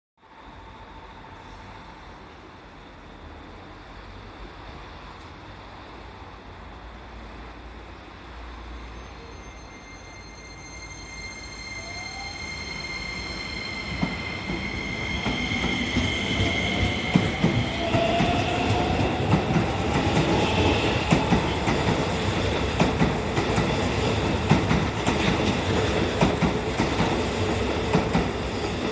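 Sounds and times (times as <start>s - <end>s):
train motor whine: 8.7s - 22.1s.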